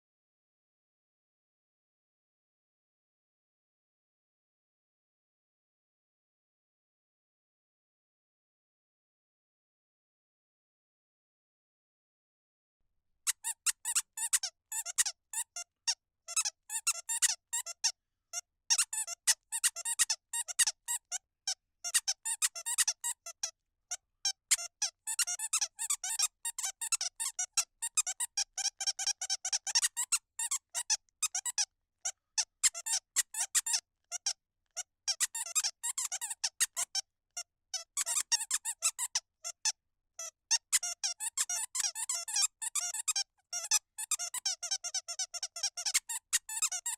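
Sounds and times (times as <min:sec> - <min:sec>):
squeaky toy squeaking: 0:13.3 - 0:23.6, 0:24.2 - 0:46.9.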